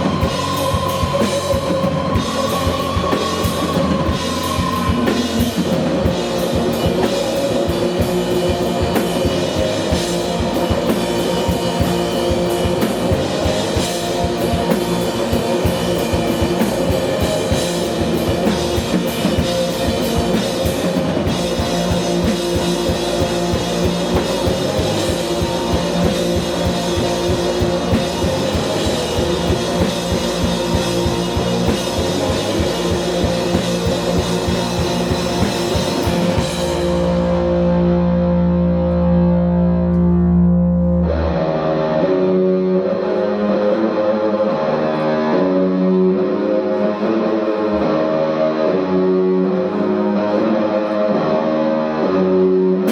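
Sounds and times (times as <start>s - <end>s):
drum kit beat: 0.0s - 38.3s
rock band playing live: 0.0s - 52.9s.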